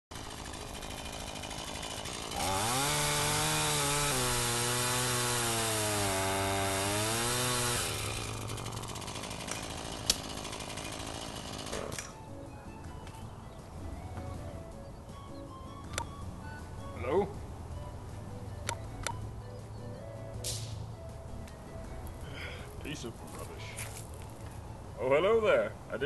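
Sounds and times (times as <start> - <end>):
chainsaw engine revving: 0.1 - 12.2
sharp click: 15.9 - 16.1.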